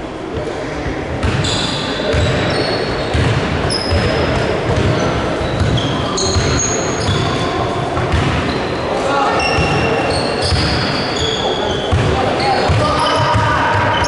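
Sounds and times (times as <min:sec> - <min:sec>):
sneakers squeaking: 0:00.4 - 0:14.0
basketball dribbling on court: 0:03.1 - 0:07.3, 0:08.0 - 0:08.6.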